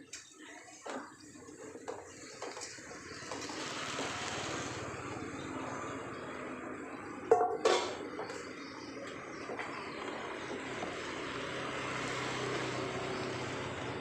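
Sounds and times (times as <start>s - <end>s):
dishware knocking: 7.3s - 8.3s
dishes clattering: 7.3s - 8.4s.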